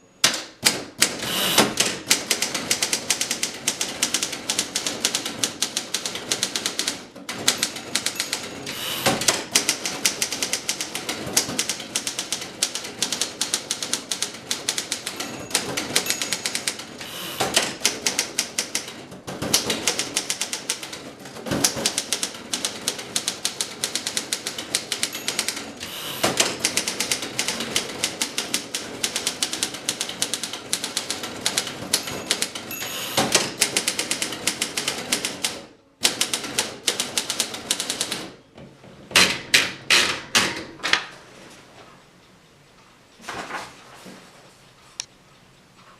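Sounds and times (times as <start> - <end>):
typewriter typing: 0.2 - 38.4.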